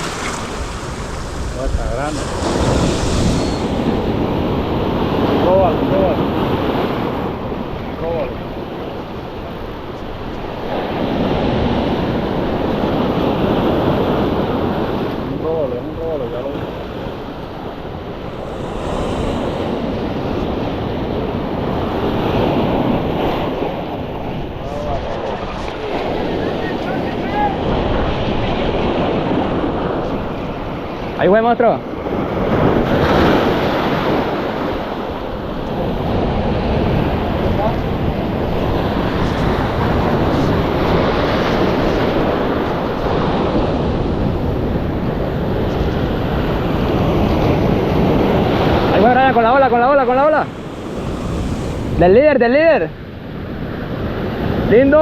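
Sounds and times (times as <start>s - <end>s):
wind buffeting microphone: 0.0s - 31.2s, 31.8s - 55.0s
sea surf breaking: 0.0s - 55.0s.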